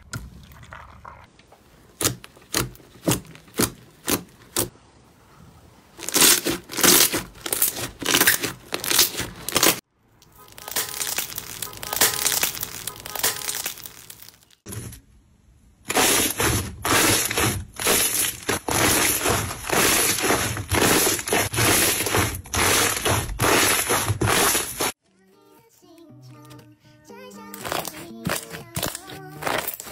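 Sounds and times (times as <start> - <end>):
slime crackling and squeezing: 6.0 - 9.8, 10.5 - 14.6, 27.5 - 29.9.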